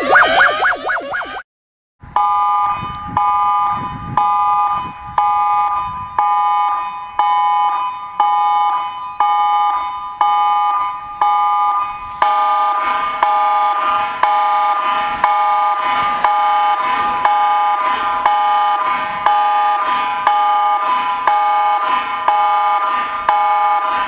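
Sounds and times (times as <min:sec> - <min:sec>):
pulsing high alert tones: 0:00.0 - 0:01.4.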